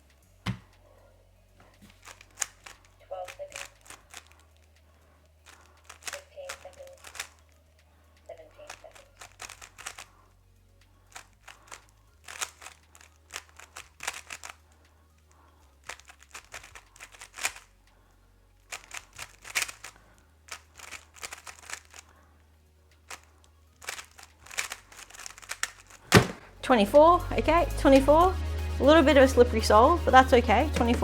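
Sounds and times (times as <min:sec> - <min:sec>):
speed cube clicking: 0:01.8 - 0:10.2, 0:11.1 - 0:17.9, 0:18.6 - 0:22.2, 0:22.9 - 0:26.4.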